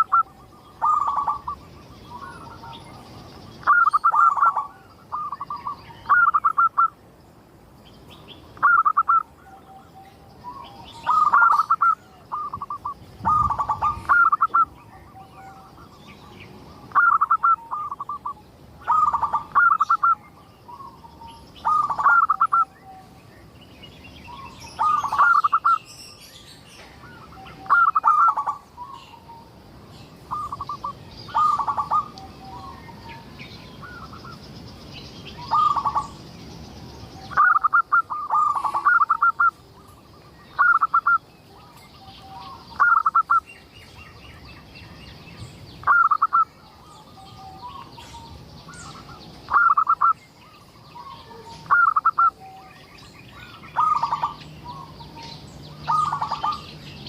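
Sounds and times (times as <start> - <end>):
dove cooing: 0.0 - 6.9, 8.6 - 15.9, 16.8 - 21.0, 21.6 - 23.1, 24.3 - 25.8, 27.0 - 29.4, 30.3 - 34.4, 35.4 - 36.2, 37.2 - 43.4, 45.8 - 50.2, 51.0 - 52.7, 53.4 - 55.2, 55.9 - 56.7.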